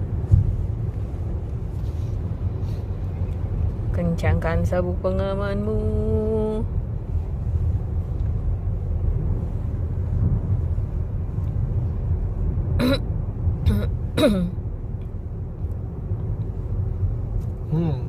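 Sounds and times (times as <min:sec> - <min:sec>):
vehicle rumble from inside: 0:00.0 - 0:18.0.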